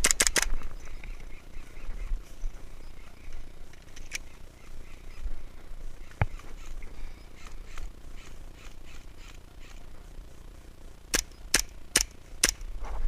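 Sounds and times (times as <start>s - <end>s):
airsoft gun shots: 11.1s - 12.7s.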